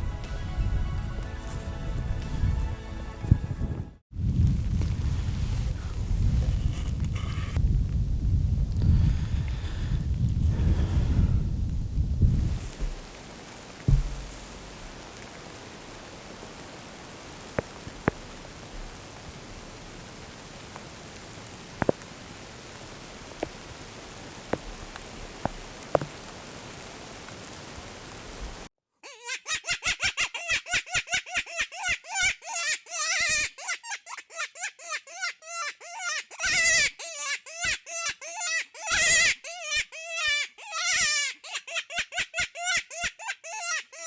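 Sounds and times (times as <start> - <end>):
rain hiss: 4.2 - 28.7.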